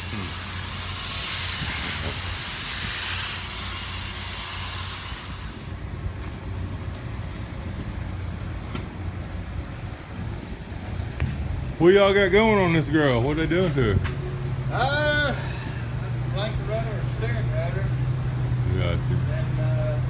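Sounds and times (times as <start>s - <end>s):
loud hiss: 0.0s - 9.4s
low machinery hum: 0.0s - 20.0s.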